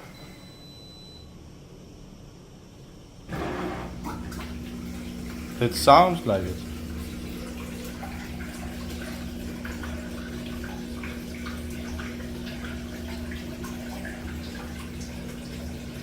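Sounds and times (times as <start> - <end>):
washing machine hum: 0.0 - 16.0
water gurgling and splashing: 3.3 - 16.0.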